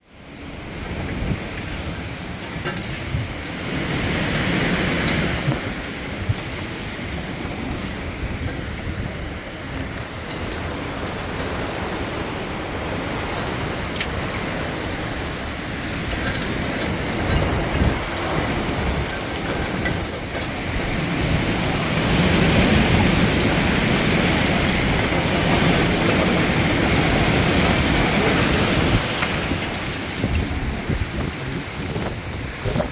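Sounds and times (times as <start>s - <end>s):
strong wind and driving rain: 0.0s - 32.9s.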